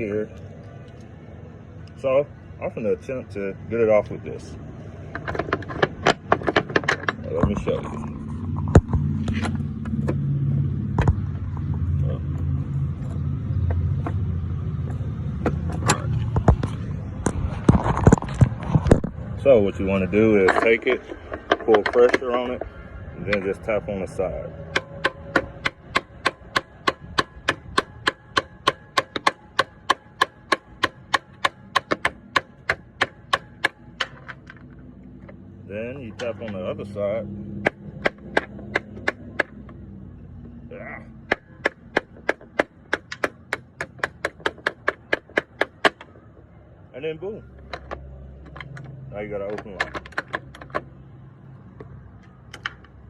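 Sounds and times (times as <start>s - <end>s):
vehicle engine humming: 0.0s - 53.0s
tapping on a padlock: 5.1s - 7.6s, 24.7s - 35.4s, 37.6s - 39.8s, 41.3s - 46.5s, 47.5s - 51.1s, 51.8s - 53.0s
sharp clicks and knocks: 5.1s - 19.2s, 20.2s - 22.7s, 24.7s - 36.8s, 37.6s - 39.8s, 41.3s - 46.5s, 47.5s - 51.1s, 51.7s - 53.0s.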